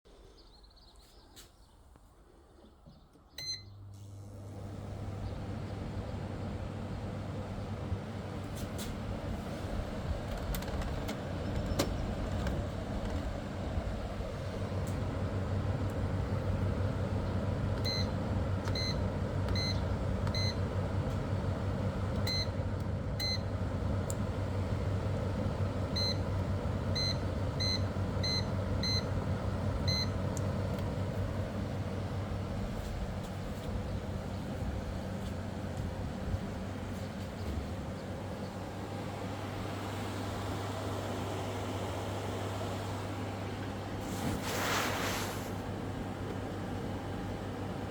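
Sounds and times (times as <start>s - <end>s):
air conditioner humming: 0.1s - 47.9s.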